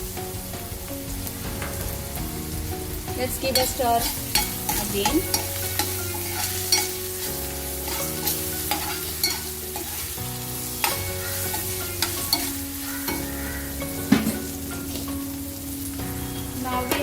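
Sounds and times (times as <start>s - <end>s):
vegetables sizzling in hot oil: 0.0s - 17.0s
utensil scraping and knocking pan: 1.5s - 10.1s, 10.8s - 15.6s.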